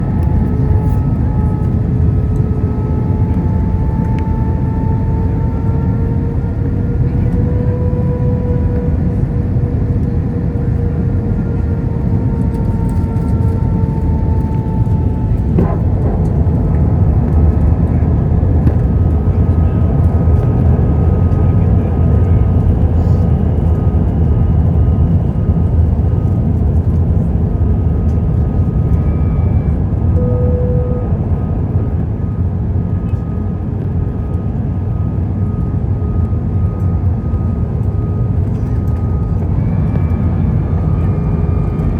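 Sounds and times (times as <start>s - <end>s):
airplane cabin rumble: 0.0s - 41.9s
engine whine: 0.0s - 41.9s.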